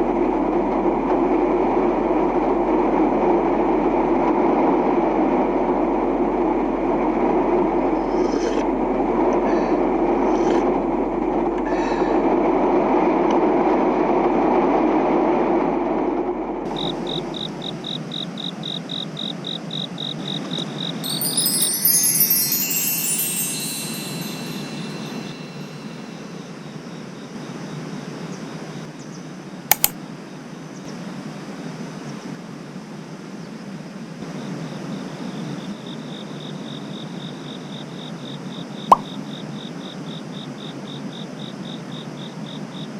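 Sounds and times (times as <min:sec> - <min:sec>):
high chime-like tones: 0:21.0 - 0:26.6
sharp clicks: 0:29.7 - 0:29.9.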